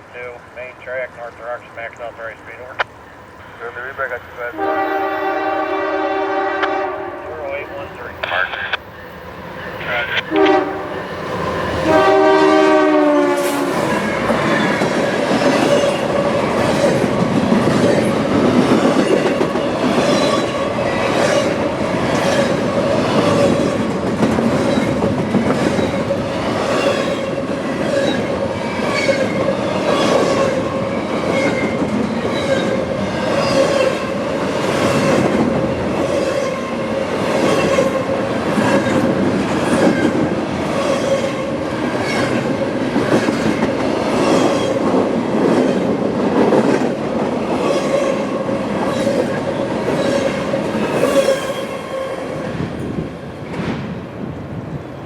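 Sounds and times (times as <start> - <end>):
train wheels on rails: 0.4 - 55.0
locomotive horn: 4.5 - 8.1, 10.0 - 11.0, 11.8 - 13.9
clickety-clack over rail joints: 14.2 - 51.6, 52.5 - 54.0.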